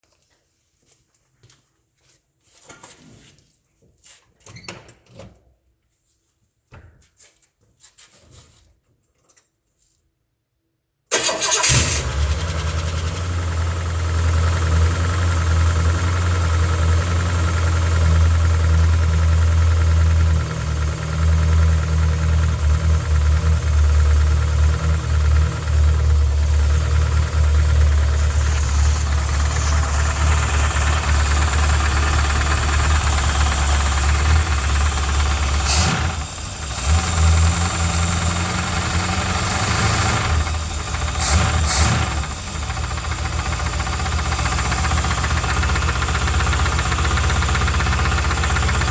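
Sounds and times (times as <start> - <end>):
car engine starting and running: 11.1 - 48.9.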